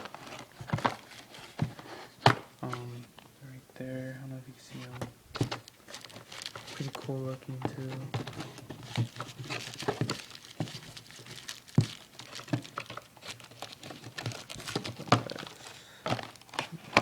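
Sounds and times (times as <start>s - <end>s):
crinkling packaging: 0.0s - 3.0s, 4.8s - 17.0s
cardboard boxes and tubes knocking: 11.7s - 13.0s.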